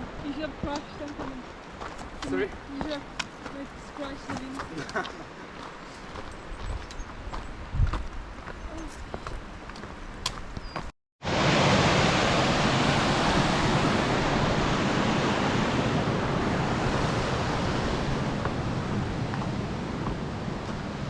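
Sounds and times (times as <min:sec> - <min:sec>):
loud rushing noise: 0:11.2 - 0:18.4.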